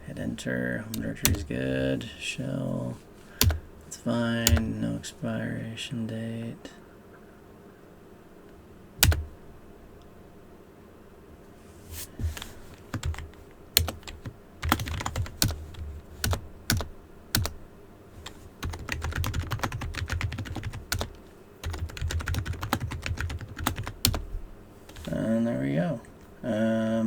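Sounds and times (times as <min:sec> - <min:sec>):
computer keyboard typing: 0:01.0 - 0:01.5, 0:03.4 - 0:03.6, 0:04.5 - 0:04.8, 0:09.0 - 0:09.3, 0:12.4 - 0:17.6, 0:18.2 - 0:24.3, 0:24.9 - 0:25.2.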